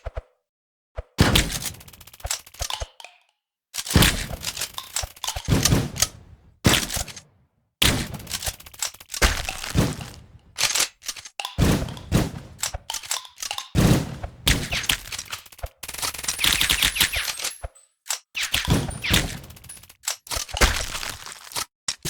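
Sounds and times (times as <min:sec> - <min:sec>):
sharp cracks and breaking: 0:07.8 - 0:22.0.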